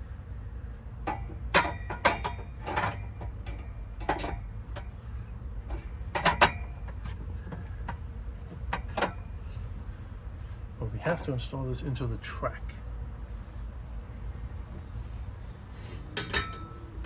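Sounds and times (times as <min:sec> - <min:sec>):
metal clinks and clacks: 0:01.1 - 0:04.9.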